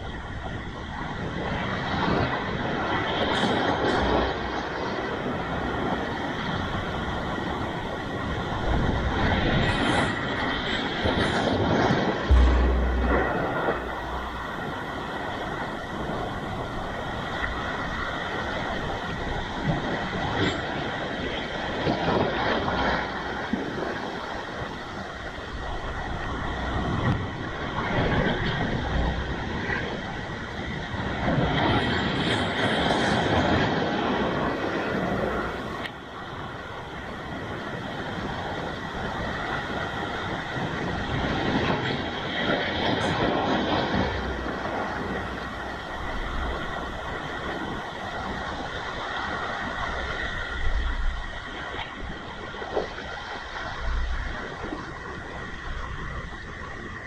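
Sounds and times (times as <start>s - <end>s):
waves breaking on rocky shore: 0.0s - 57.0s.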